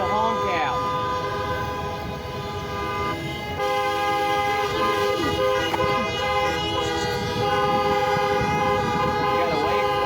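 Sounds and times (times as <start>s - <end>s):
vehicle horns honking: 0.0s - 10.0s.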